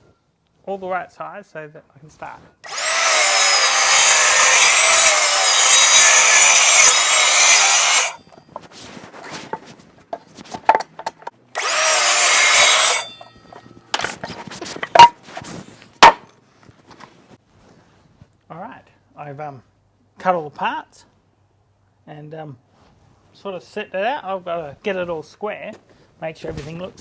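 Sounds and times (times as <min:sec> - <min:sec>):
mitre saw cutting timber: 0:02.6 - 0:09.7, 0:10.5 - 0:16.3
wood pieces knocking: 0:02.7 - 0:15.2, 0:16.0 - 0:16.3.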